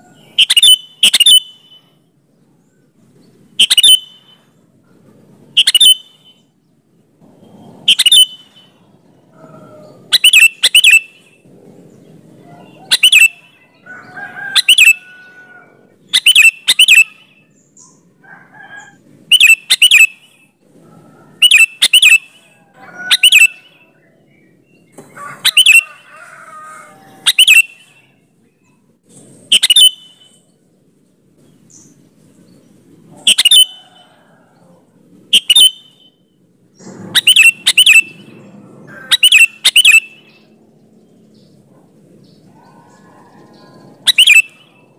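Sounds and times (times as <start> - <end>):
bird chattering: 0.0 - 1.8, 3.6 - 6.4, 7.8 - 13.6, 14.6 - 15.3, 16.0 - 18.1, 19.2 - 20.5, 21.3 - 26.1, 27.2 - 28.1, 29.1 - 30.4, 33.0 - 34.0, 34.6 - 44.9
bird singing sharp notes: 35.3 - 40.5.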